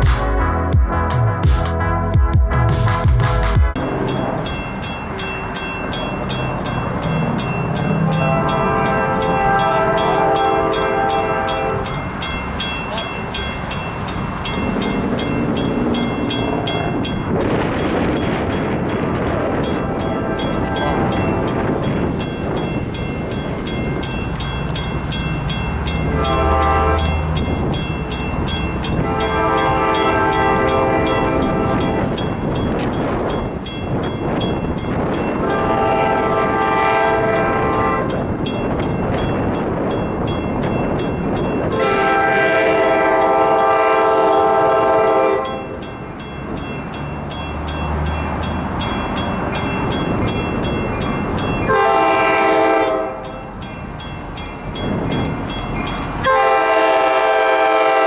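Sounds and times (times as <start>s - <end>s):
train rumble and clatter: 0.0s - 58.0s
train horn blasts: 6.2s - 12.1s, 19.5s - 21.8s, 25.7s - 27.7s, 28.8s - 32.3s, 35.4s - 38.2s, 41.7s - 45.8s, 51.6s - 53.4s, 56.2s - 58.0s.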